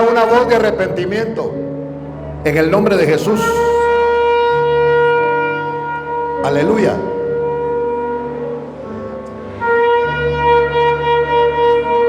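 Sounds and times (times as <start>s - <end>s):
soft keyboard accompaniment: 0.0s - 12.0s
shofar long note: 3.4s - 12.0s.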